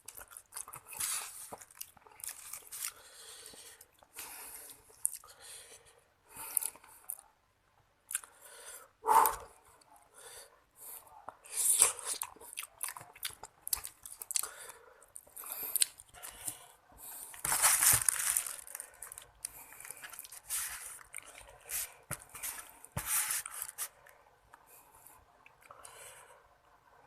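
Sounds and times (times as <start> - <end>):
close chewing and crunching: 0.0 - 5.4, 6.4 - 7.3, 8.1 - 8.4, 11.5 - 22.8.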